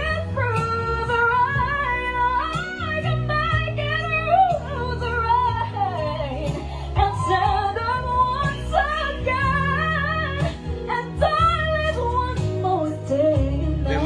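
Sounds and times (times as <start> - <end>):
instrumental backing track: 0.0 - 14.0
women singing pop ballad: 0.0 - 14.0.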